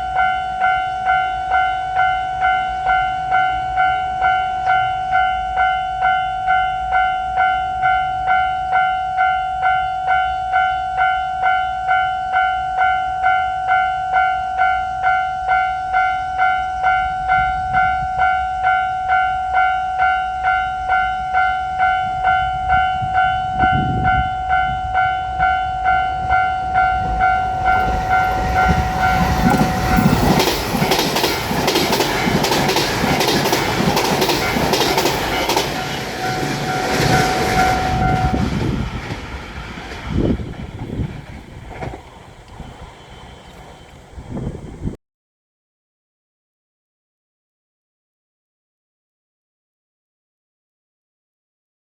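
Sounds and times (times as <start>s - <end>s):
level-crossing bell ringing: 0.0s - 31.0s
electric train passing: 0.0s - 45.0s
train wheels clacking on rail joints: 26.8s - 44.1s.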